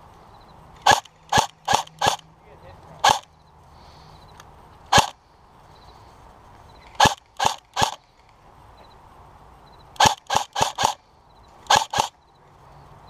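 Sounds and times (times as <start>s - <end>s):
airsoft gun shots: 0.8s - 2.2s, 3.0s - 3.3s, 4.9s - 5.2s, 7.0s - 8.0s, 10.0s - 11.0s, 11.7s - 12.2s.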